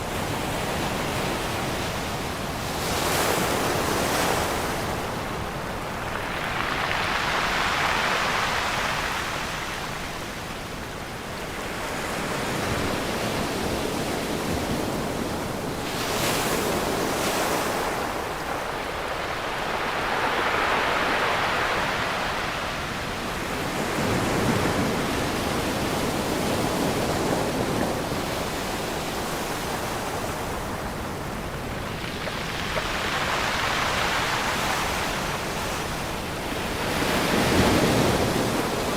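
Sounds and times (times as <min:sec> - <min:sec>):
waves breaking on beach: 0:00.0 - 0:38.9.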